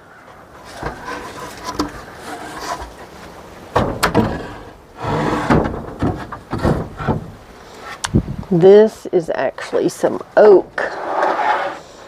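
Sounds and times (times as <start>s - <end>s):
wooden boards knocking and scraping: 0.6s - 8.0s.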